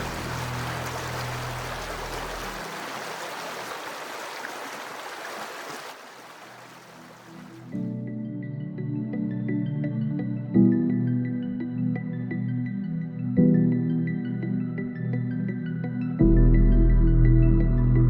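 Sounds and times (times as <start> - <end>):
creek water flowing: 0.0 - 7.8.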